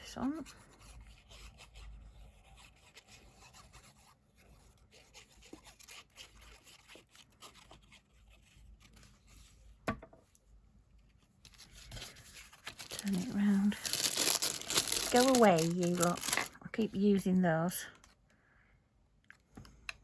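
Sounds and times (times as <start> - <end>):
paper and card rustling: 4.9 - 9.6, 11.0 - 16.6.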